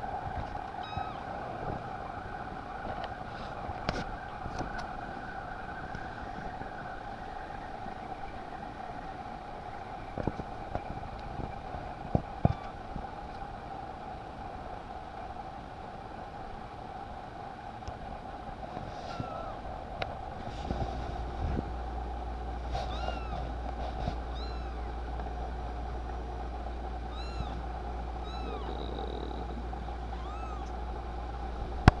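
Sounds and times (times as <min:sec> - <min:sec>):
kitten mewing: 0:00.8 - 0:01.2, 0:19.0 - 0:19.6, 0:22.8 - 0:23.5, 0:24.2 - 0:24.9, 0:27.1 - 0:27.6, 0:28.2 - 0:30.8.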